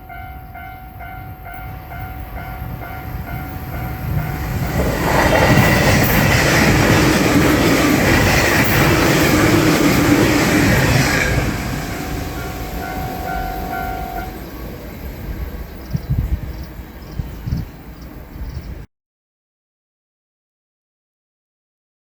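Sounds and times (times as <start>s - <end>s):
crossing warning bell ringing: 0.0s - 15.9s
electric train passing: 0.0s - 18.9s.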